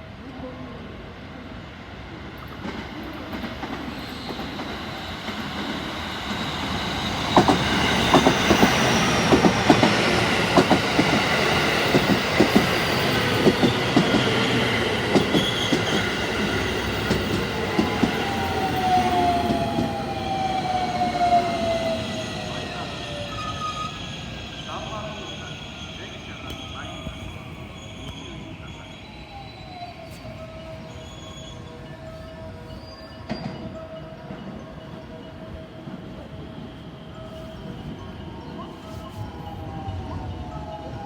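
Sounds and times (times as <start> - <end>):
electric train rumbling past: 0.0 - 41.0
wheels clicking over rail joints: 7.1 - 21.0.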